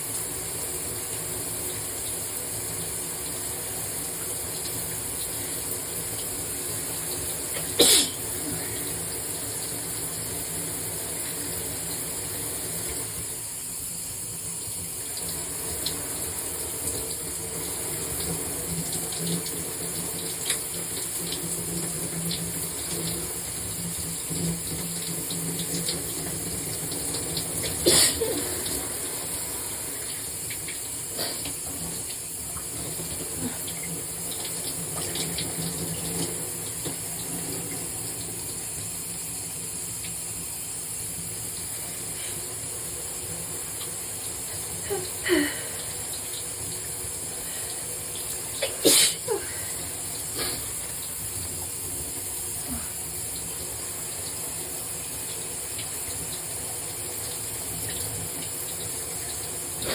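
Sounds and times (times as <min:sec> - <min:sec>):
shower water running: 0:00.0 - 0:59.9
person sneezing: 0:07.7 - 0:08.8, 0:27.8 - 0:28.6, 0:44.8 - 0:45.7, 0:48.6 - 0:49.7, 0:50.4 - 0:50.7.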